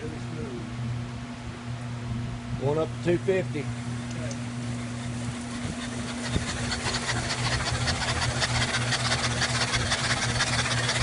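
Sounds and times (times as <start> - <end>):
engine turning over humming: 3.5 - 11.0.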